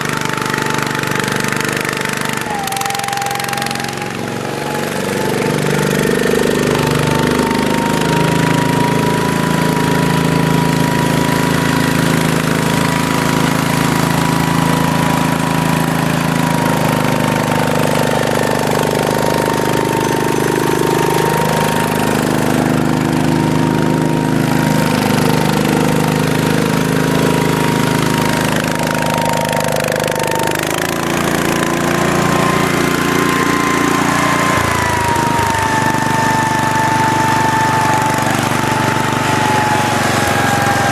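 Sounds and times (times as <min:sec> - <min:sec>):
lawn tractor engine running: 0:00.0 - 0:40.9
thin high whine: 0:02.4 - 0:10.1.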